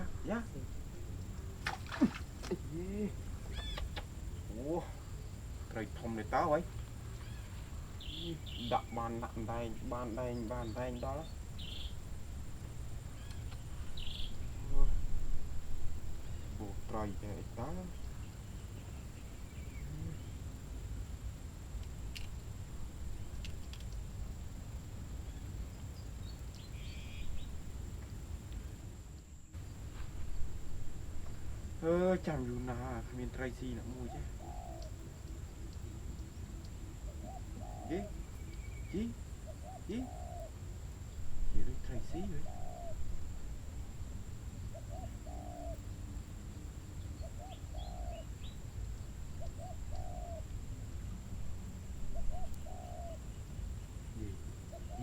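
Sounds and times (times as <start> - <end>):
faint high bird chirps: 3.4 - 4.8, 7.1 - 12.0, 13.1 - 14.9, 25.2 - 27.6, 36.6 - 40.5
dove cooing: 34.0 - 35.0, 37.1 - 38.4, 39.4 - 40.6, 42.1 - 43.2, 44.7 - 45.9, 47.2 - 48.4, 49.4 - 50.5, 52.1 - 53.2, 54.6 - 55.0.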